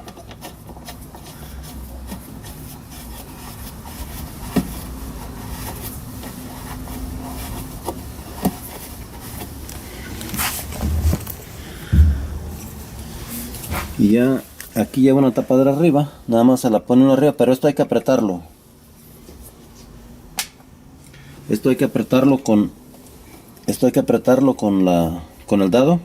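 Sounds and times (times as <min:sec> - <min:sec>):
heavy thumps: 0:10.6 - 0:14.0.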